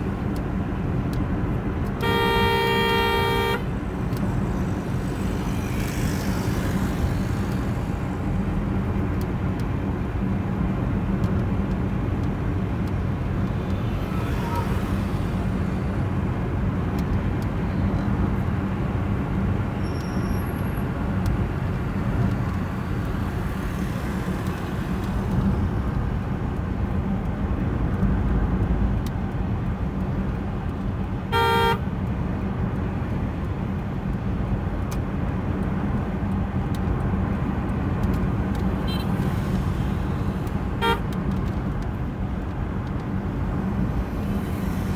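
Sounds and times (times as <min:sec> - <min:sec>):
road traffic drone: 0:00.0 - 0:44.9
car horn honk: 0:02.0 - 0:03.8, 0:31.3 - 0:31.9, 0:38.8 - 0:39.2, 0:40.7 - 0:41.2.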